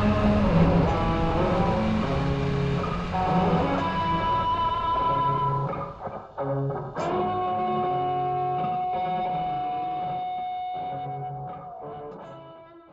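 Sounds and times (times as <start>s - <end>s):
electric guitar note held: 0.0s - 11.5s.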